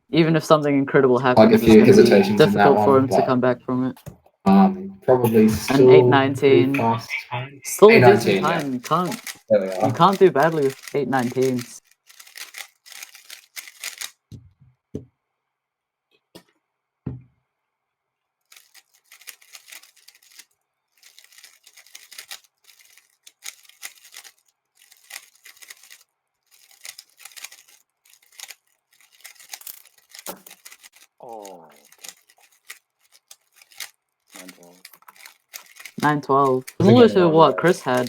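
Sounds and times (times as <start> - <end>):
speed cube clicking turns: 8.5 - 14.3, 18.5 - 31.2, 31.8 - 36.8.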